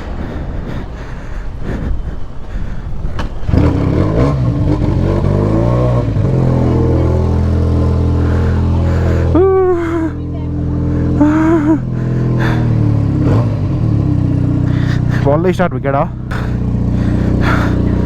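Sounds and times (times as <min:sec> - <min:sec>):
motorcycle engine revving and idling: 0:03.2 - 0:18.0.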